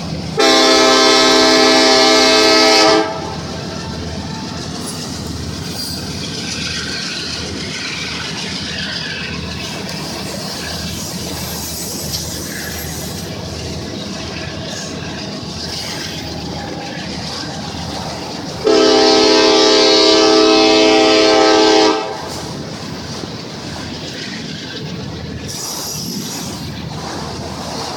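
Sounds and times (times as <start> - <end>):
train rumbling and clattering: 0.0 - 27.9
train air horn blast: 0.4 - 3.4, 18.6 - 22.5.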